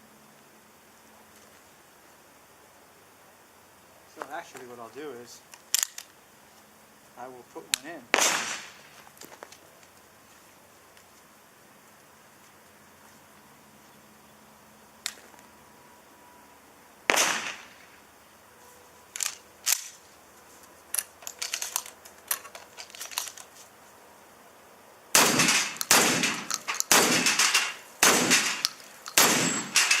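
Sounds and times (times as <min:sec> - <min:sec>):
gun clicks and clacks: 0:05.5 - 0:06.2, 0:19.1 - 0:20.0, 0:20.9 - 0:23.5, 0:25.2 - 0:30.0
shotgun shots: 0:08.1 - 0:08.8, 0:17.1 - 0:17.9, 0:25.1 - 0:30.0.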